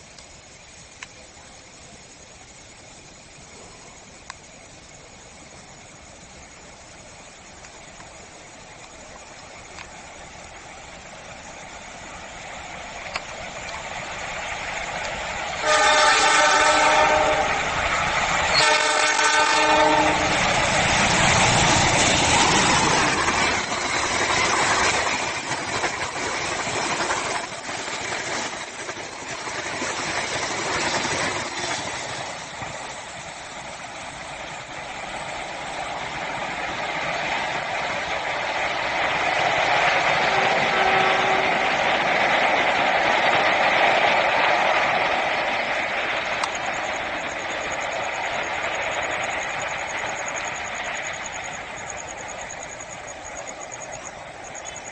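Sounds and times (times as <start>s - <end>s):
train wheels clattering: 6.6s - 54.9s
train horn blasts: 15.6s - 17.6s, 18.5s - 20.3s, 40.3s - 41.7s.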